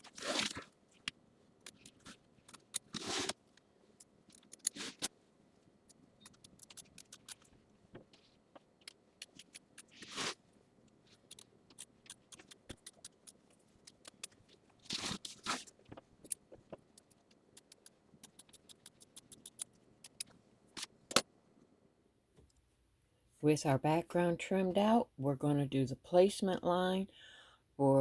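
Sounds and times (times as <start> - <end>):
scissors snipping fabric: 0.0 - 0.7.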